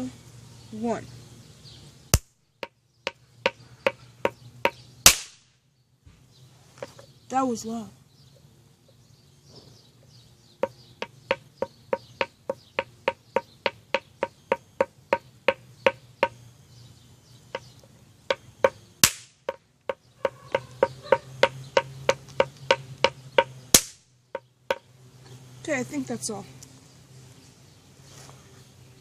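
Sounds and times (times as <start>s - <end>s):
sharp crack: 2.1s - 2.4s, 5.0s - 5.5s, 19.0s - 19.6s, 22.2s - 24.1s
fast series of hard knocks: 10.6s - 16.4s, 18.3s - 24.0s.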